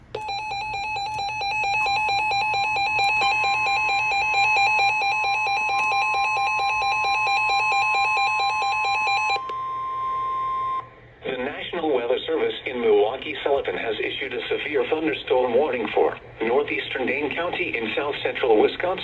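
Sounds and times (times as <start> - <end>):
steady warning tone: 0.0 - 10.9
rapid electronic alarm beeping: 0.1 - 10.8.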